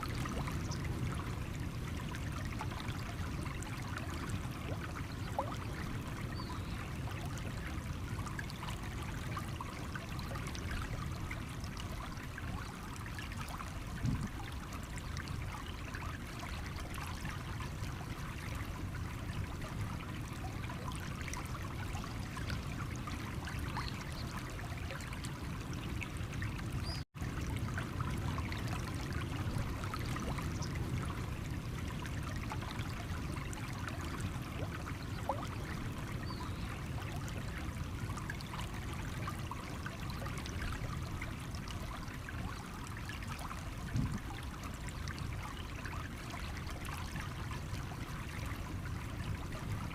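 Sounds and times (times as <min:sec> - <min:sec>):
stream flowing over stones: 0:00.0 - 0:49.9.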